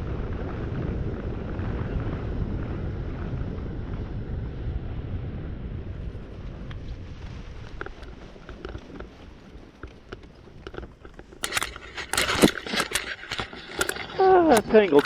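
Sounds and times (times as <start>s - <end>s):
gear rustling and clicking: 10.6s - 15.0s.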